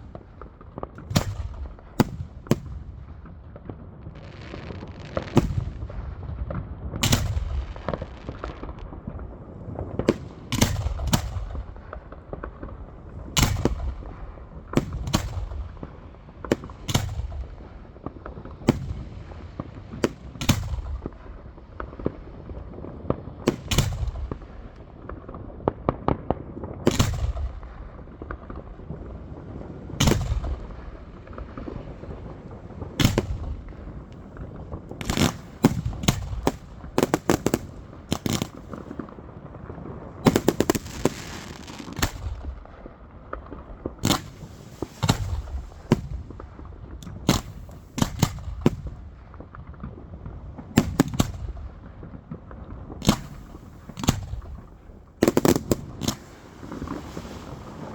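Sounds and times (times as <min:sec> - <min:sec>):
fireworks bangs: 0:00.0 - 0:25.2, 0:26.9 - 0:57.9
fireworks crackling: 0:00.0 - 0:25.2, 0:26.9 - 0:57.9
fireworks hissing: 0:33.0 - 0:39.1, 0:40.3 - 0:42.4, 0:44.0 - 0:46.4, 0:53.1 - 0:57.9.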